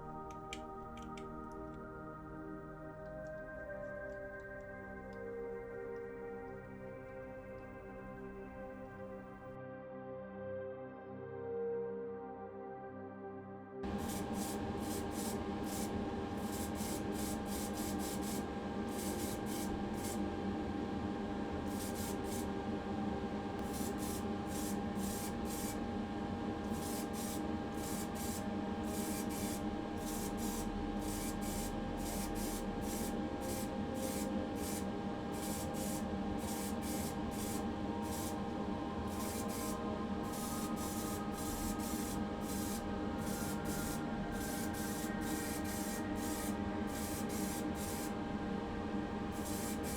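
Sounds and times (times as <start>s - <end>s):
compressor machine hum: 13.8s - 49.9s
hissing spray bursts: 26.8s - 48.2s, 49.4s - 49.9s.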